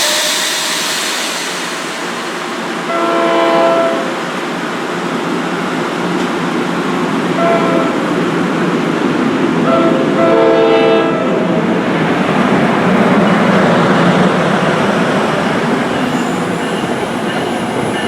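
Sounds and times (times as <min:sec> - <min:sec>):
train rumbling on tracks: 0:00.0 - 0:18.0
locomotive air horn blasts: 0:02.9 - 0:04.2, 0:07.4 - 0:08.0, 0:09.7 - 0:11.2.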